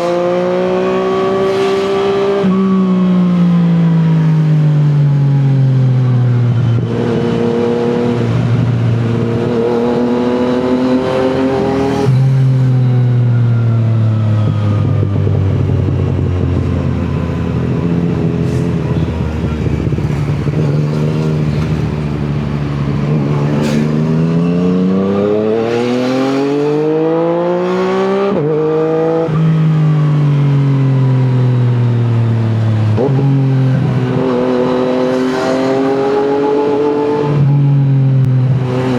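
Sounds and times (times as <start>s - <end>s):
motorcycle engine shifting gears: 13.8s - 29.4s.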